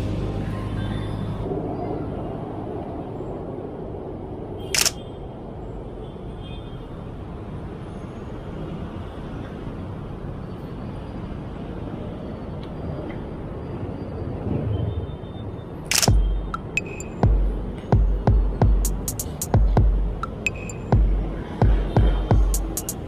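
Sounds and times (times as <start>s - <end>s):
street traffic hum: 0.0s - 23.0s
camera shutter click: 4.8s - 5.0s, 15.9s - 16.1s.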